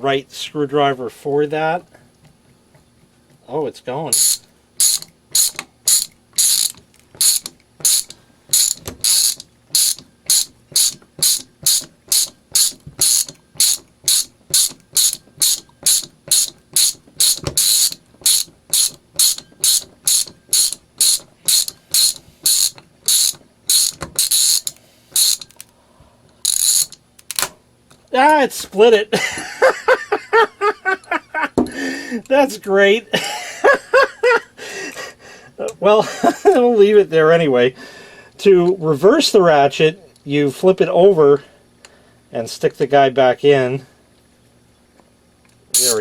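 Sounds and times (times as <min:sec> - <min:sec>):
ratcheting screwdriver clicking: 0:04.1 - 0:25.7, 0:26.4 - 0:27.5, 0:45.8 - 0:46.0.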